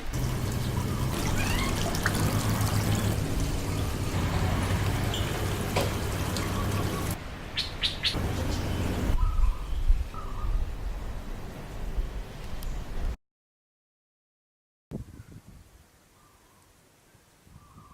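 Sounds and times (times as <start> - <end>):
water running: 0.0 - 7.2.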